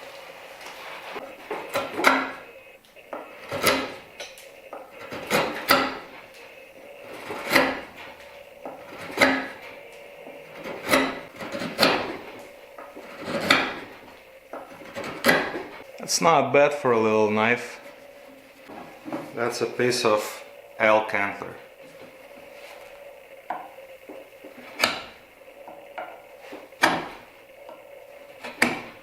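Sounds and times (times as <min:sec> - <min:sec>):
knife scraping wood with clicks: 0:10.5 - 0:12.3, 0:13.0 - 0:13.9.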